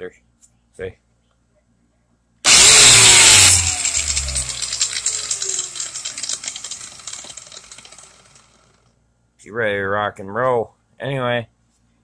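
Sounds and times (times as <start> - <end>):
angle grinder spinning down: 2.5 - 8.8.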